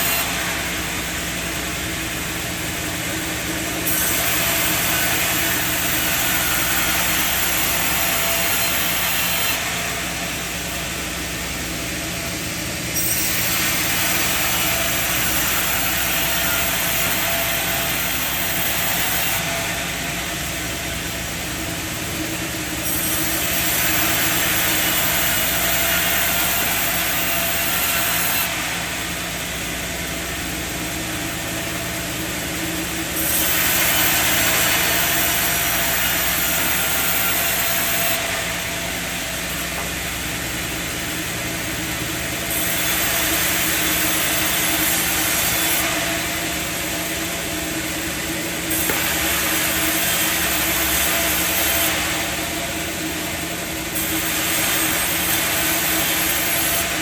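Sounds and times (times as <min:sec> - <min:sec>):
saw cutting through wood: 0:00.0 - 0:57.0
steady machine hum: 0:00.0 - 0:57.0.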